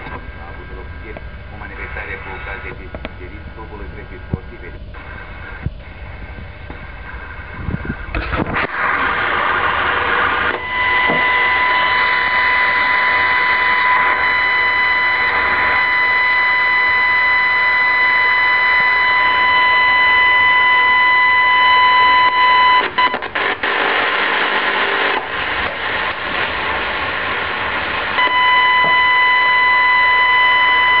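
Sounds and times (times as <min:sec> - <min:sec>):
high-pitched radio whine: 0:00.0 - 0:31.0
radio hiss: 0:00.0 - 0:31.0.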